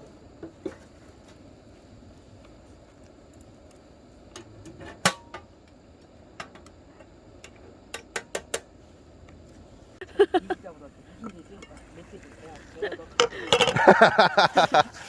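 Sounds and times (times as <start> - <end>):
utensils and dishes clicking: 11.3 - 13.9.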